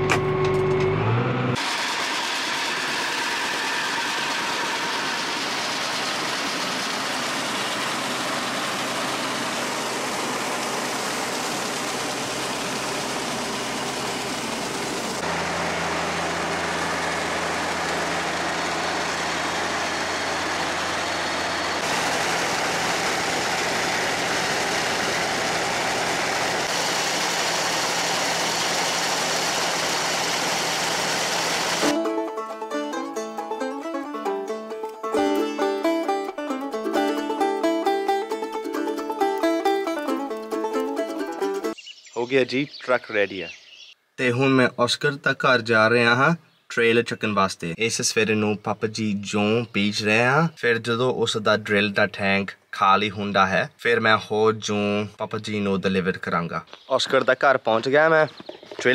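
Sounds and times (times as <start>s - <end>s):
tractor engine hum: 0.0s - 41.8s
grain auger rushing: 1.6s - 32.1s.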